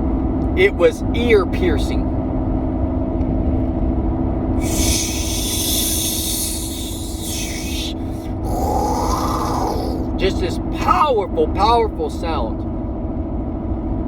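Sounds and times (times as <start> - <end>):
loud high hiss: 4.6 - 10.1.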